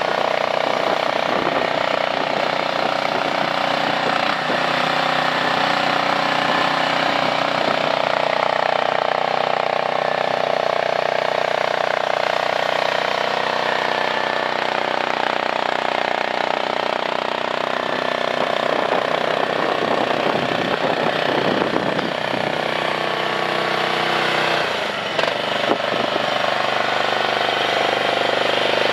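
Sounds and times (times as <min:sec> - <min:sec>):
small engine running: 0:00.0 - 0:28.9.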